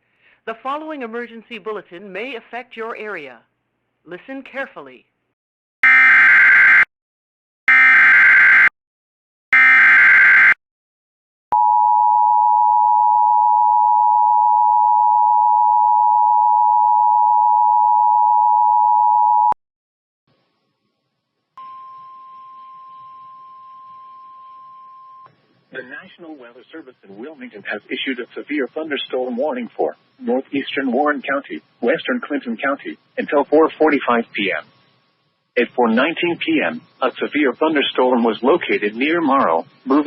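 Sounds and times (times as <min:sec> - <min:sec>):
faint steady tone: 0:21.6 - 0:27.3.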